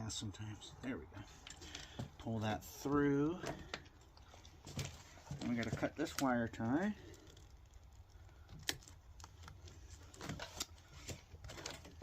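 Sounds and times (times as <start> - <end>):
wire tie snapping: 7.1 - 10.8.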